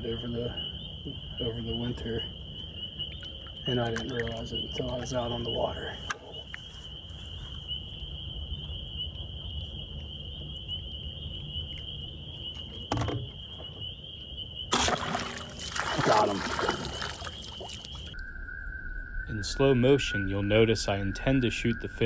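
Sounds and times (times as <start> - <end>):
arrow shot striking fish: 14.7 - 17.7
high-pitched whine: 18.2 - 22.0.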